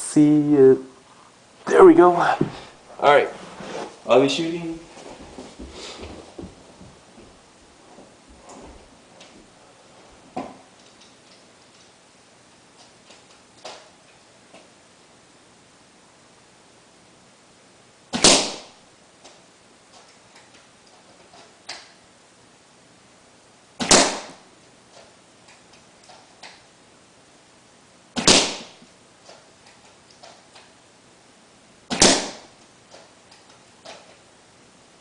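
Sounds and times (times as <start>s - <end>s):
airsoft rifle shot snap: 18.1s - 18.8s, 23.8s - 24.4s, 28.2s - 28.8s, 31.9s - 32.5s.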